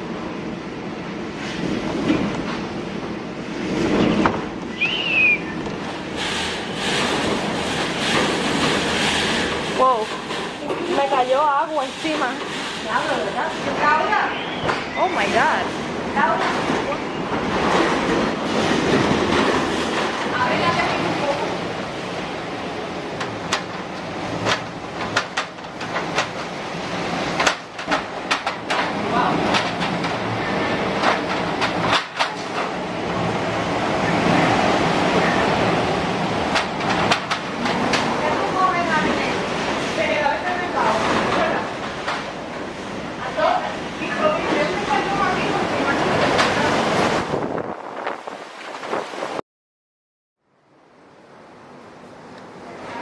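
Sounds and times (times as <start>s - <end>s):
high wind whistle: 4.6s - 5.7s
strong wind blowing: 13.4s - 49.4s.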